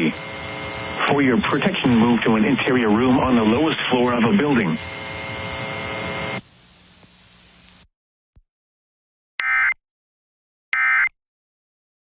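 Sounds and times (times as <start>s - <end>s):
buzzy digital data bursts: 0.0s - 6.4s
low radio hiss: 0.0s - 7.9s.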